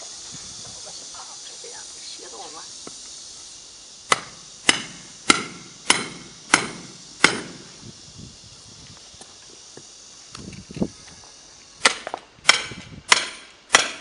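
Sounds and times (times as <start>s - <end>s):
hammer blows on metal: 4.1s - 7.8s, 11.8s - 14.0s.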